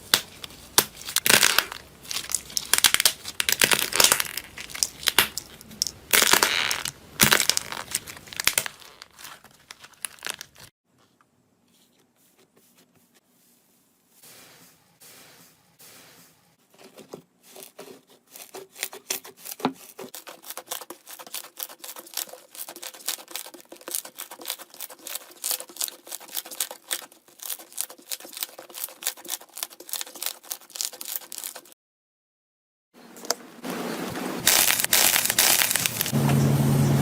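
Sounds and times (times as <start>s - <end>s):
slime crackling and popping: 0.0s - 10.7s, 34.4s - 36.2s
slime squishing: 0.0s - 10.7s, 17.5s - 31.7s, 34.4s - 36.2s.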